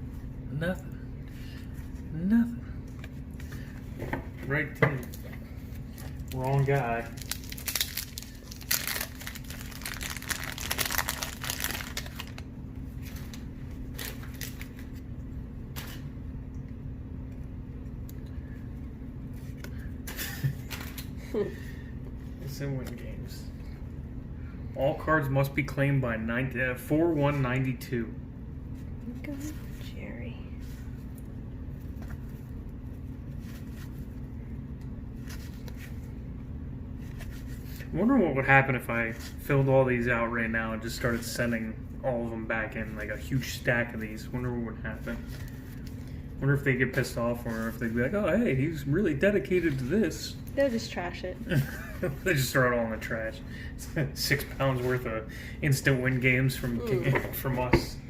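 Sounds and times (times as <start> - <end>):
steady low hum: 0.0 - 58.0
wrapper crinkling and tearing: 5.9 - 15.0
cards rustling and flicking: 19.4 - 21.2
cards being handled: 30.6 - 36.1.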